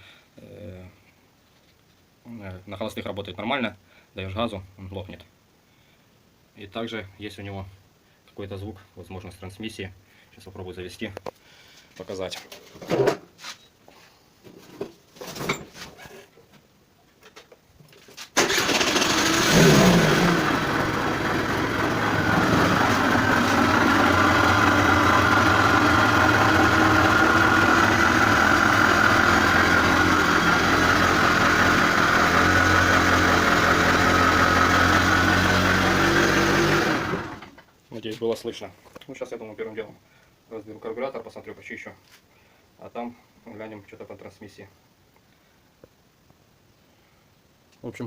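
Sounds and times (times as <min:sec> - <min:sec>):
scooter engine idling: 0:18.9 - 0:37.4.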